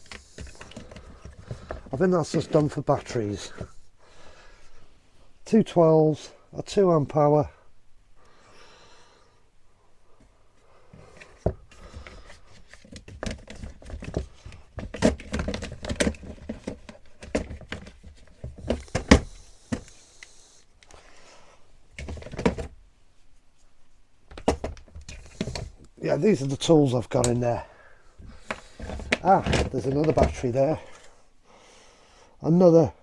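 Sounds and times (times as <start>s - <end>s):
plastic tools knocking and clattering: 0.0s - 3.7s, 11.2s - 19.9s, 22.0s - 22.7s, 24.3s - 25.8s, 28.2s - 30.4s
rustling: 10.2s - 31.3s.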